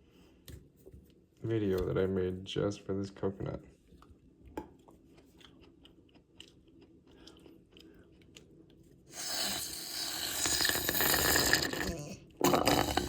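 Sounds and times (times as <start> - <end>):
mouth noises tasting: 9.1 - 13.0.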